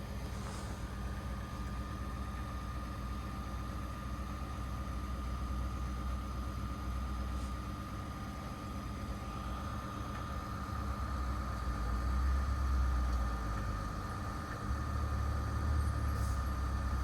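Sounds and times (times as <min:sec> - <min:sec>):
engine idling hum: 0:00.0 - 0:17.0
thin steady whine: 0:05.3 - 0:15.9.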